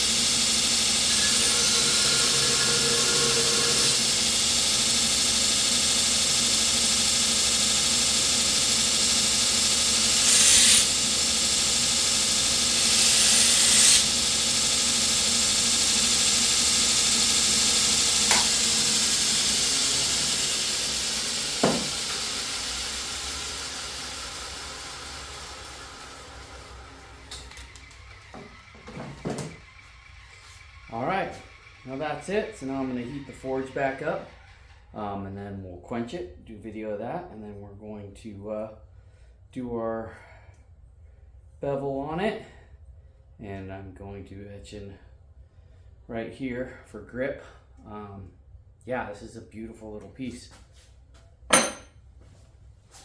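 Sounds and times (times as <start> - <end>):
blade grinding against wheel: 0.0 - 22.4
electric grinder running: 0.0 - 34.8.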